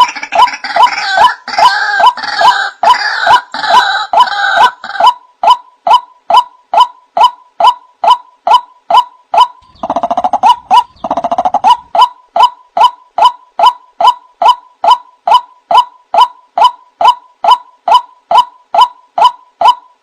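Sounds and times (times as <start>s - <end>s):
bird croaking call: 0.0s - 19.9s
bird rapid chattering: 8.0s - 19.8s.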